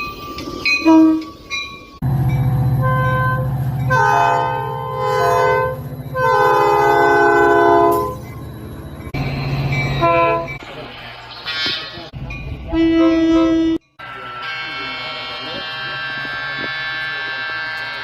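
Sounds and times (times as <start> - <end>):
train horn blasts: 0.8 - 1.4, 2.2 - 8.3, 9.4 - 10.6, 12.7 - 18.0.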